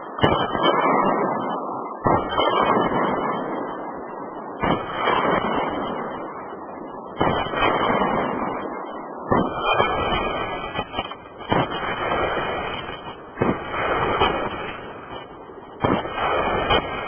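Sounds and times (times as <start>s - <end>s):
firework crackle: 7.2s - 8.4s, 9.3s - 17.0s.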